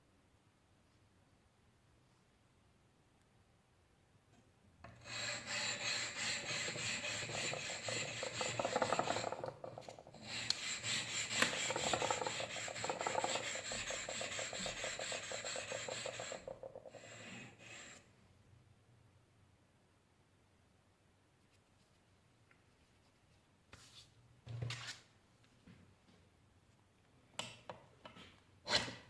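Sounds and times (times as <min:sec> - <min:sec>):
file rasping on steel: 0:04.9 - 0:18.1.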